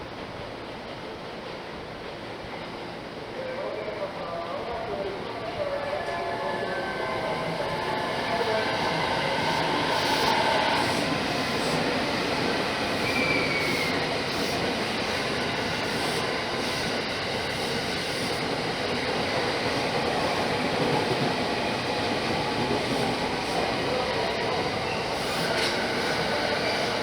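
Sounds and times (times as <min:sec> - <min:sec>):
train running on rails: 0:00.0 - 0:27.0
faint wheel squeal: 0:13.0 - 0:14.0.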